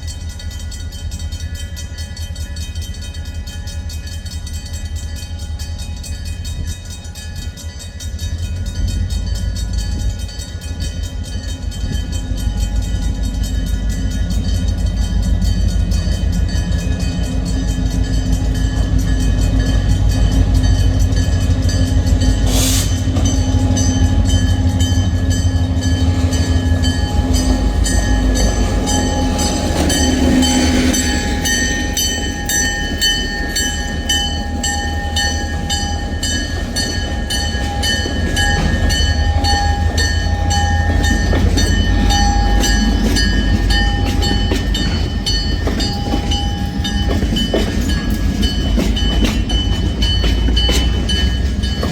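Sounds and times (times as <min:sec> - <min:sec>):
freight train rumbling past: 0:00.0 - 0:51.9
train wheels clattering: 0:00.0 - 0:51.9.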